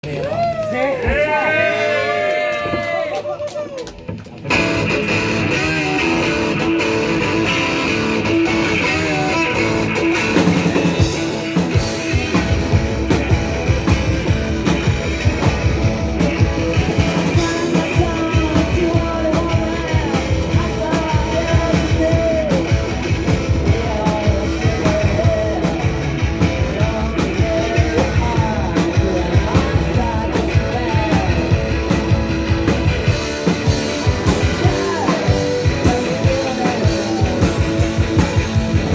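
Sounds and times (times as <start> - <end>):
punk band playing live: 0.0 - 38.9
drums fast steady beat: 4.0 - 38.9
ringing guitar chords: 4.5 - 38.9.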